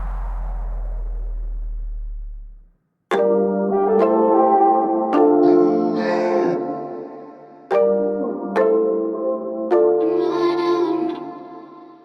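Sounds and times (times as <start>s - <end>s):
electronic music bass note: 0.0s - 2.7s.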